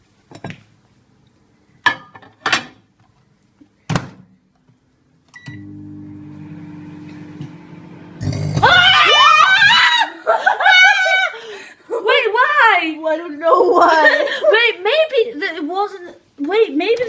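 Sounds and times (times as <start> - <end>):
microwave humming: 5.3 - 9.9
microwave short beep: 5.4 - 6.2.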